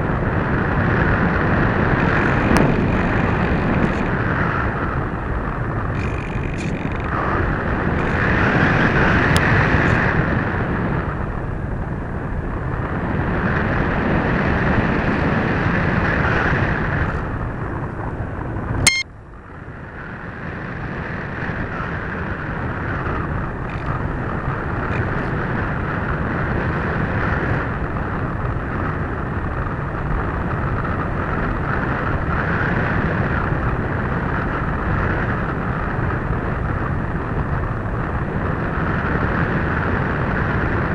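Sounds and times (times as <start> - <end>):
wind rushing over microphone: 0.0 - 40.9
sharp click: 18.9 - 19.1.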